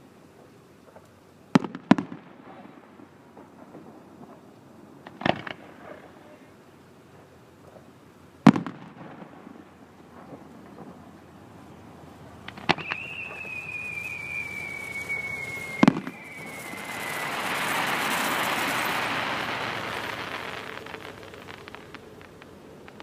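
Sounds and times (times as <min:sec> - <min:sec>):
firework bangs: 0:00.9 - 0:06.5, 0:07.8 - 0:23.0
firework crackling hiss: 0:00.9 - 0:23.0
firework whistle falling in pitch: 0:12.7 - 0:22.5.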